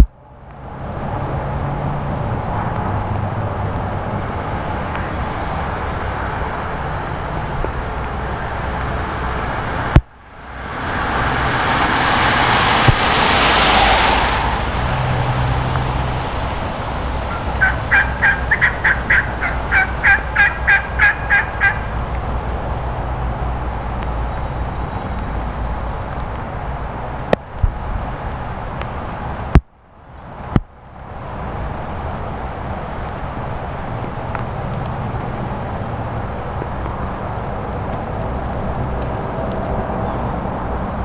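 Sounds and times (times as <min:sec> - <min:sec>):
steady low rumble: 0:00.0 - 0:21.0
rushing noise: 0:00.0 - 0:27.2
turkey yelps: 0:17.3 - 0:21.9.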